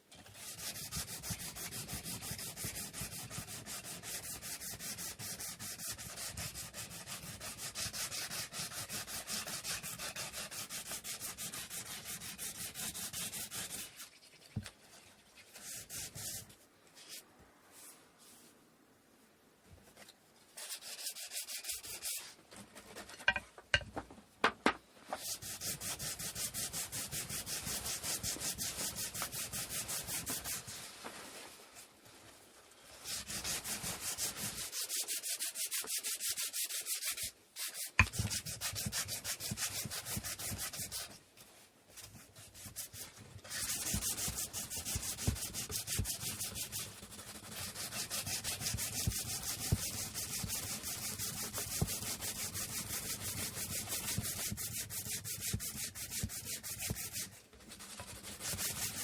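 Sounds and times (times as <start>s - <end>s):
sandpaper sanding wood: 0.3s - 14.1s, 15.5s - 16.4s, 20.6s - 22.4s, 25.2s - 30.9s, 33.0s - 41.2s, 42.4s - 59.0s.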